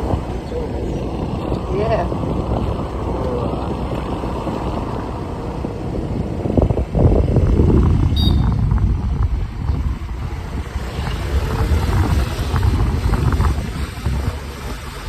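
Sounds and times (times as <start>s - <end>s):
road noise: 0.0s - 15.0s
wind buffeting microphone: 0.0s - 15.0s
scooter engine: 9.3s - 15.0s.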